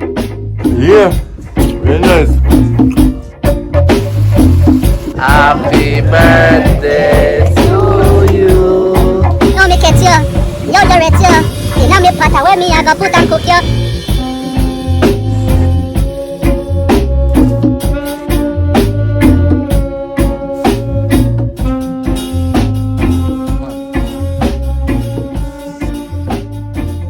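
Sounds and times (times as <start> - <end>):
pulsing bass line: 0.0 - 17.8
steady drum beat: 0.0 - 27.0.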